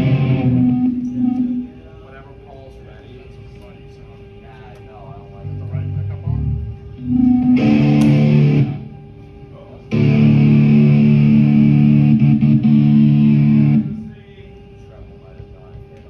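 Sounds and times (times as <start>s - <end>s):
distorted electric guitar chords: 0.0s - 1.8s, 6.0s - 9.0s, 9.9s - 14.1s.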